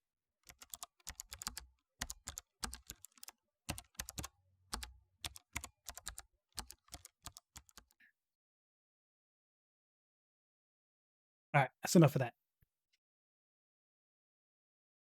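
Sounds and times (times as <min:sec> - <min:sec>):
mechanical keyboard typing: 0:00.4 - 0:08.0.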